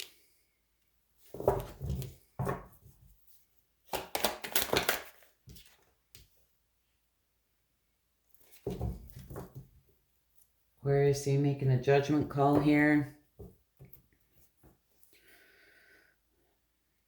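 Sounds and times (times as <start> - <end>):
cards rustling and tapping: 1.2 - 3.2, 3.8 - 6.4.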